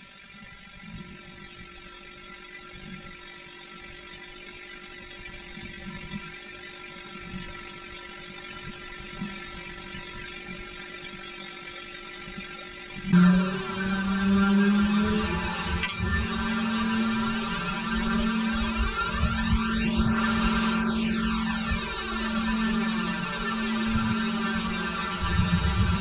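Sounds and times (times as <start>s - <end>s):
whirring hum: 7.4s - 26.0s.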